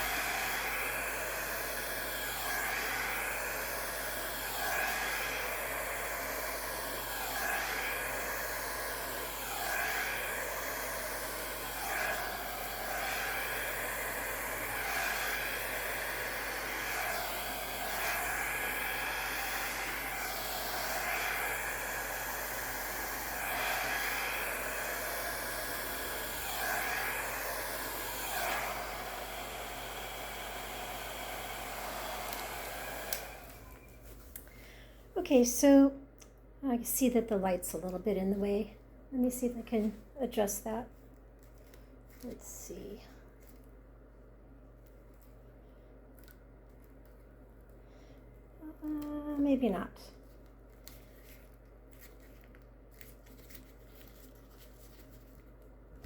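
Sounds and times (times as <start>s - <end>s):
hair dryer whooshing: 0.0s - 34.2s.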